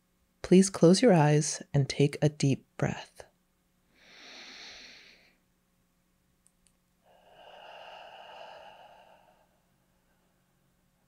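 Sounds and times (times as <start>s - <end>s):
person breathing out slowly: 3.9s - 5.4s, 7.0s - 10.6s.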